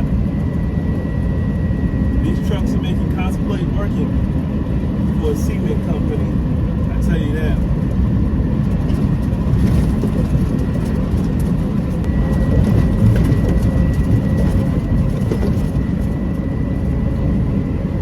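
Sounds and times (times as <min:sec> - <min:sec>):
truck engine and road rumble: 0:00.0 - 0:18.0
faint high whine: 0:12.0 - 0:18.0.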